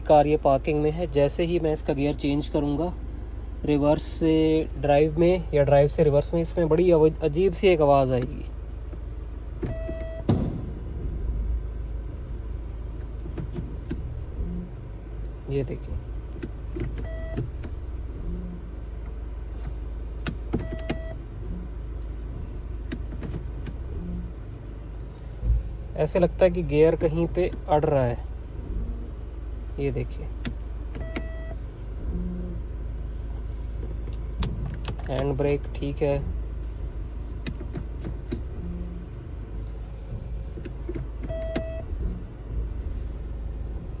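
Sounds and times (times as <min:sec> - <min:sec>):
diesel engine idling: 0:00.0 - 0:44.0
short electronic beeps: 0:09.7 - 0:10.3, 0:41.3 - 0:41.9
gearbox clicks and knocks: 0:33.8 - 0:36.0.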